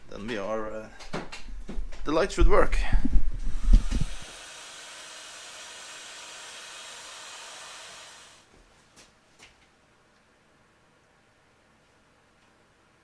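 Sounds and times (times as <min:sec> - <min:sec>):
heat gun blowing: 0:03.4 - 0:08.5.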